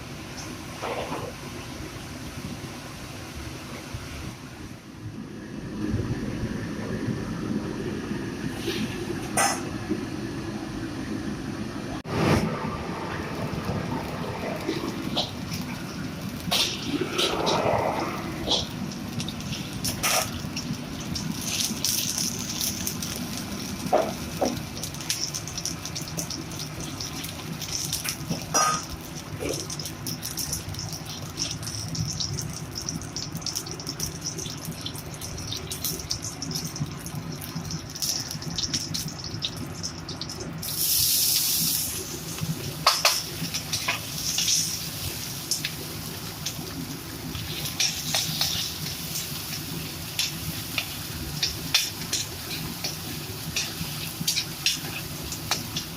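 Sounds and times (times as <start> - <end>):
chicken deep-frying in oil: 0.0 - 4.9, 13.2 - 55.9
loud oil hiss: 40.6 - 42.3.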